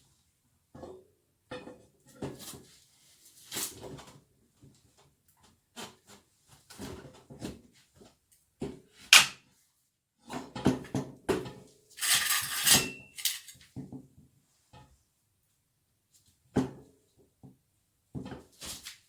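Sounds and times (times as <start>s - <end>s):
hard objects clinking: 12.0s - 13.6s.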